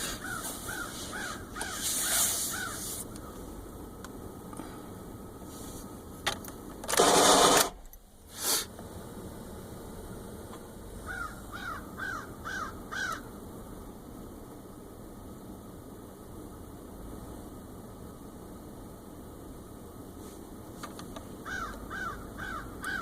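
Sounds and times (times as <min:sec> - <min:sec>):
crow cawing: 0:00.2 - 0:01.8, 0:02.5 - 0:02.9, 0:11.0 - 0:13.3, 0:21.4 - 0:23.0.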